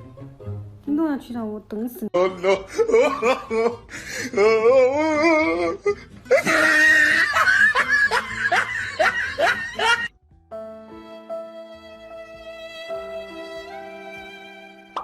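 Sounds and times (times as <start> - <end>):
person laughing: 2.2 - 3.8, 6.3 - 10.1.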